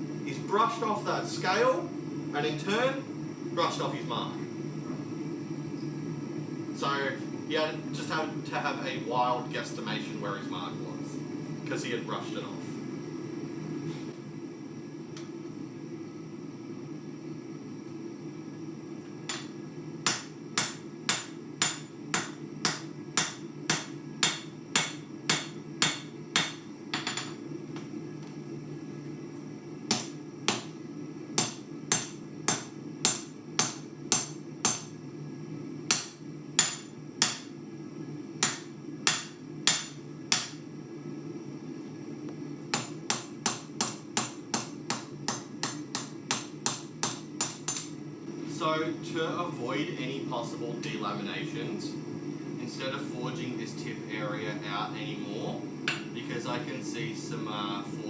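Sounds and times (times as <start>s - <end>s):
steady low hum: 0.0s - 58.0s
hammer blows on hot steel: 19.3s - 27.4s, 29.9s - 30.8s, 31.4s - 35.0s.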